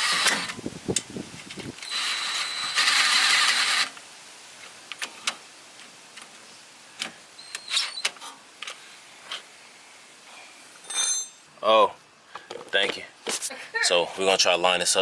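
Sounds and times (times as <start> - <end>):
metal tools clinking: 10.8 - 11.5.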